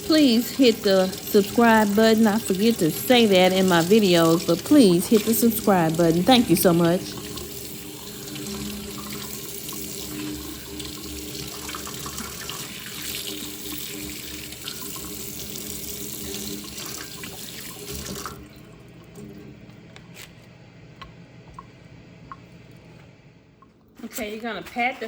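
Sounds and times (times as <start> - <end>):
faucet running into a sink: 0.0 - 19.5.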